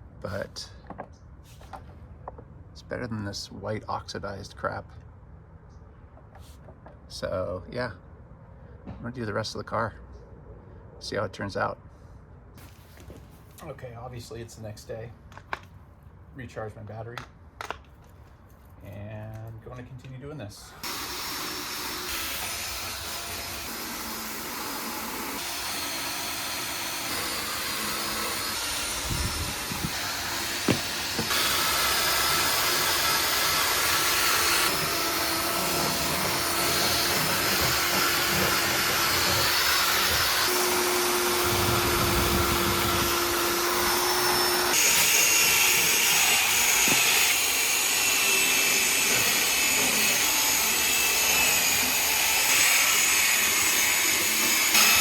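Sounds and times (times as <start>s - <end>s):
cordless drill spinning brush: 20.8s - 55.0s.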